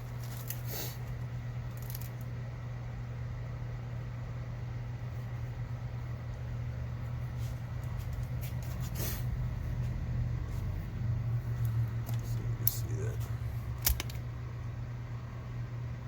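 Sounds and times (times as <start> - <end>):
steady low hum: 0.0 - 16.0
light handling clicks: 13.8 - 14.2.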